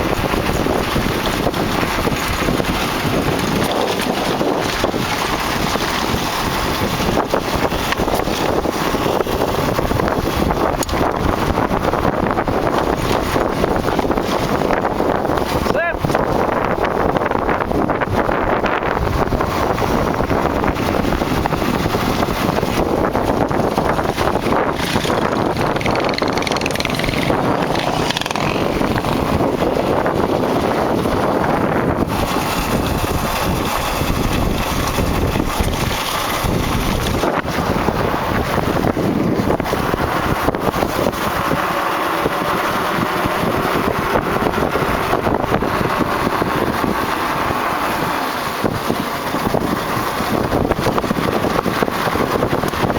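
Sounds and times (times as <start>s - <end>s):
wind rushing on microphone: 0.0s - 52.9s
tyres rolling on road: 19.0s - 37.4s
small rattles: 23.4s - 29.6s.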